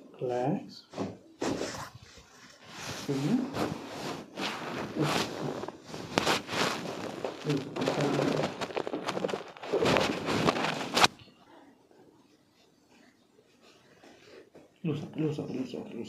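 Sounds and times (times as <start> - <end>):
hands rubbing on clothing: 1.4 - 11.2.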